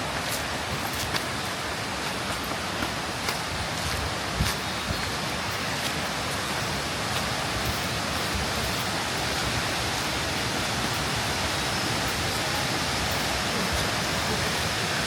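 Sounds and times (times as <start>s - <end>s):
waterfall and river rushing: 0.0s - 15.0s.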